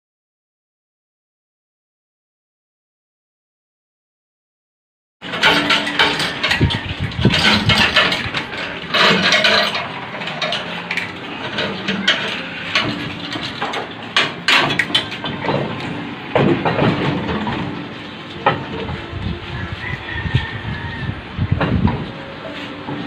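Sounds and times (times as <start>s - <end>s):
metal knocks and clanks: 5.2s - 19.1s
steady background noise: 5.2s - 23.0s.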